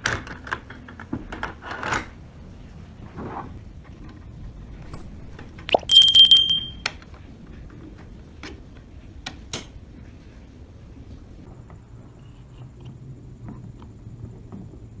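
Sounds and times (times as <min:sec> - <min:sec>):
small metal parts clinking: 0:05.8 - 0:06.9.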